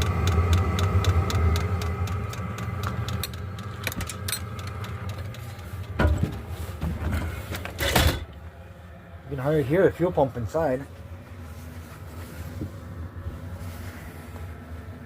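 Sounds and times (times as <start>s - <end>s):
fuel pump ticking: 0.0s - 6.2s
air heater drone: 0.0s - 15.0s.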